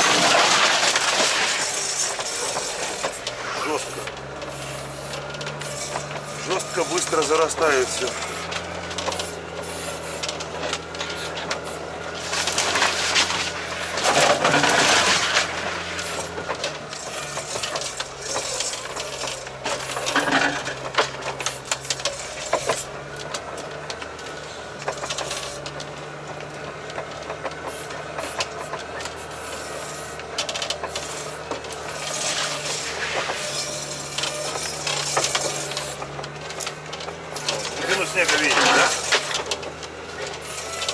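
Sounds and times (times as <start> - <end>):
branches scraping vehicle body: 0.0 - 40.9
atv engine running: 1.3 - 40.9.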